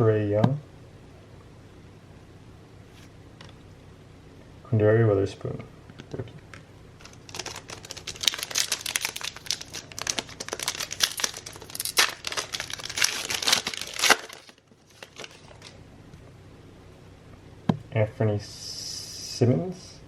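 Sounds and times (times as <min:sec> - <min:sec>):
wrapper crinkling and tearing: 0:07.0 - 0:15.8.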